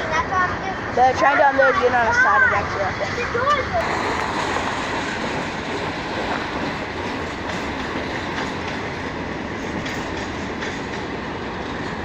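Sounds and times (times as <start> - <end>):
freight train wheels rumbling: 0.0 - 12.0
clacks over rail joints: 3.1 - 12.0.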